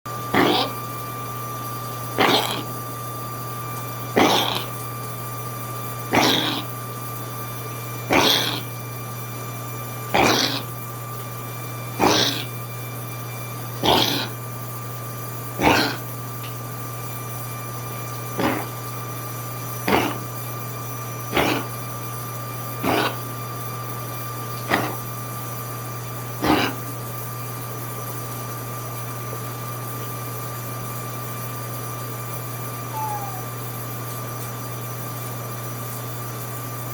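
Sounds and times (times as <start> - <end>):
pet coughing: 0.3 - 0.8, 2.1 - 2.8, 4.1 - 4.9, 6.1 - 6.8, 8.1 - 8.8, 10.1 - 10.8, 11.9 - 12.6, 13.8 - 14.4, 15.5 - 16.2, 18.3 - 18.9, 19.7 - 20.4, 21.2 - 22.0, 22.7 - 23.4, 24.6 - 25.2, 26.4 - 27.0, 32.9 - 33.6
person coughing: 15.6 - 16.0, 18.4 - 18.7, 19.9 - 20.2, 24.7 - 25.0, 26.4 - 26.8.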